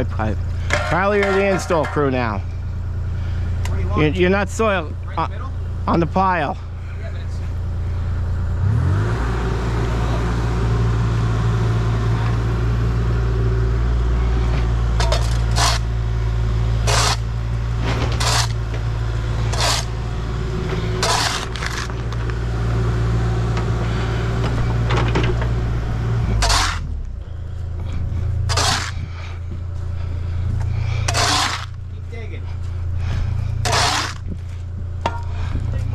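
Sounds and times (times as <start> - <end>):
diesel engine running: 0.0 - 35.9
shovel scraping soil and gravel: 0.6 - 2.3, 15.0 - 15.9, 16.8 - 22.3, 26.3 - 27.0, 27.9 - 29.4, 30.7 - 31.8, 33.6 - 34.6.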